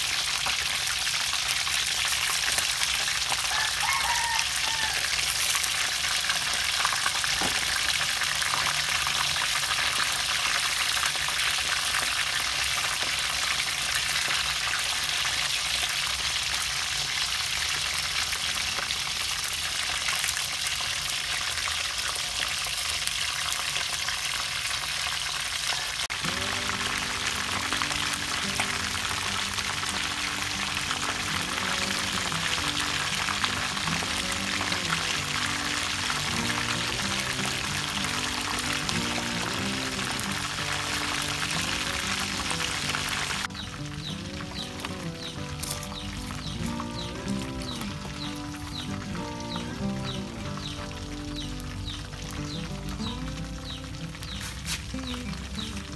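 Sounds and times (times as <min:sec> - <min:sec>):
deep-frying sizzle in oil: 0:00.0 - 0:55.9
background music: 0:26.1 - 0:55.9.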